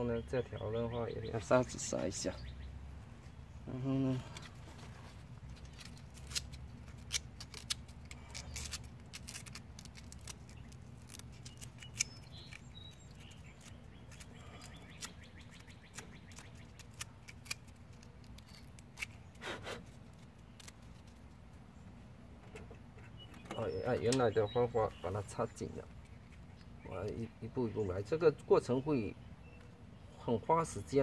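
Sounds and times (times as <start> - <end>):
hand tools clicking and scraping: 5.5 - 15.1, 16.3 - 21.0.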